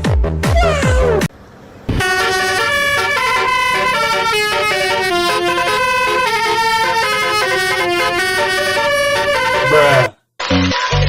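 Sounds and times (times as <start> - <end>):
multi-tone bus air horn tune: 1.9 - 10.1.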